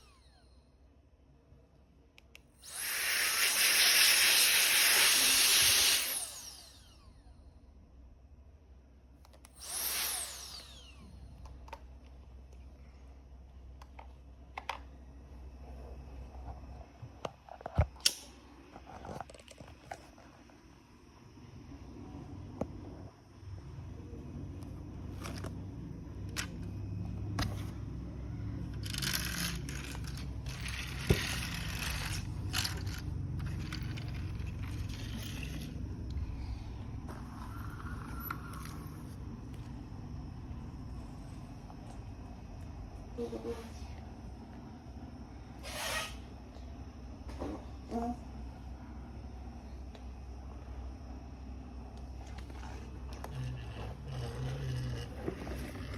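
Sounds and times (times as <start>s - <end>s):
turbo fan whining down: 9.5s - 11.4s, 23.5s - 40.6s
toy vehicles scraping and clattering: 25.1s - 27.8s, 28.6s - 35.9s, 37.1s - 39.2s, 52.2s - 55.9s.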